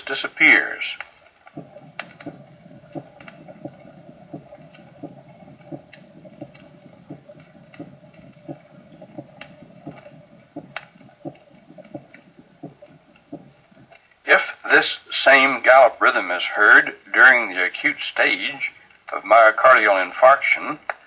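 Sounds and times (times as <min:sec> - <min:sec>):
steady hum: 0:00.0 - 0:16.5
heartbeat thumps: 0:01.4 - 0:14.0.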